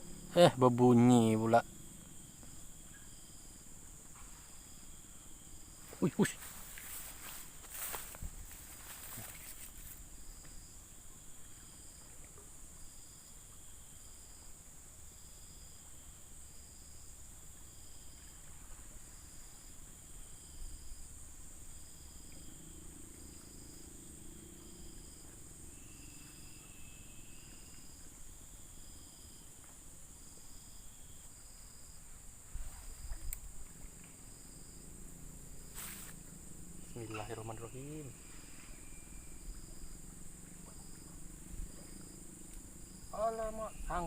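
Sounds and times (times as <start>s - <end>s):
insects chirping: 0.0s - 44.0s
regular insect chirp: 0.0s - 44.0s.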